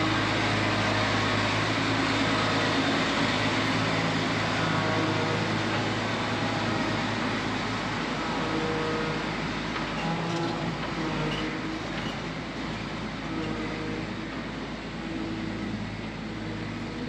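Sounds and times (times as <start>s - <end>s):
heavy machinery engine running: 0.0s - 17.0s.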